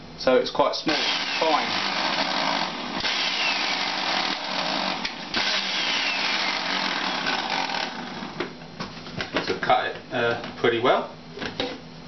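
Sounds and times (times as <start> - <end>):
electric juicer motor running: 1.0 - 8.5.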